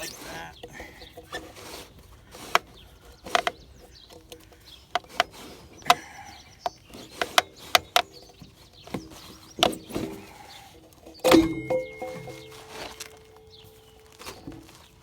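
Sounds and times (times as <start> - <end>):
sharp clicks and knocks: 2.5 - 10.3.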